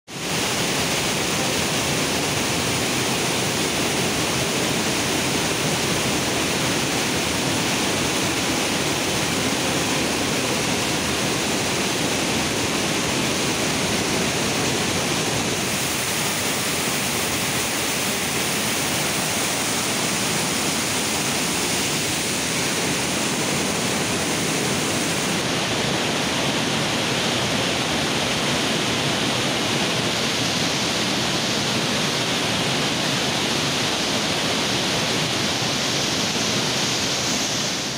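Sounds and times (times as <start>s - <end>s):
waterfall splashing: 0.1s - 37.9s.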